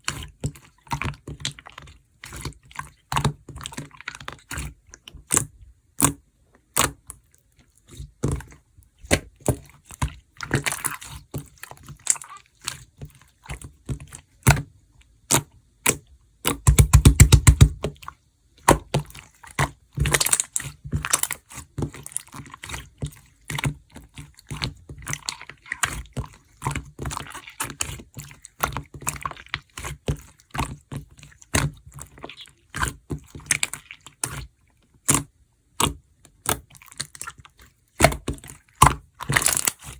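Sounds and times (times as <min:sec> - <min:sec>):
slime sticky clicks and wet pops: 0:15.3 - 0:17.8, 0:35.1 - 0:36.6.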